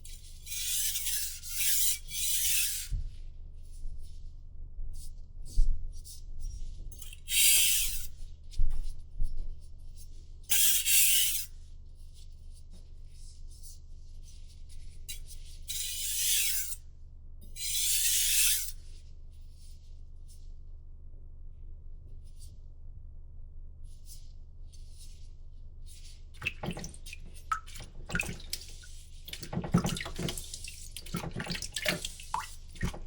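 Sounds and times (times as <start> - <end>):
knife on whetstone rasping: 0.5 - 2.9, 7.3 - 8.1, 15.7 - 16.8, 17.6 - 18.8.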